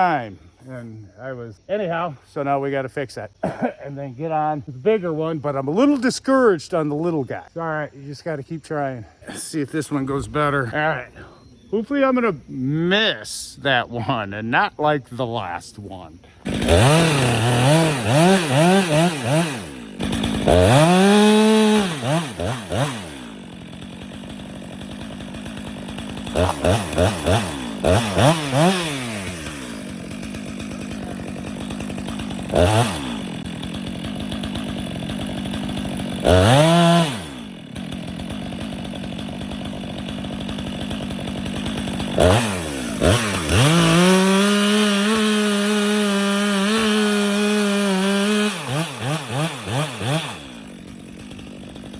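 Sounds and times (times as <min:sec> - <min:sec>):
chainsaw revving: 0:15.9 - 0:51.9.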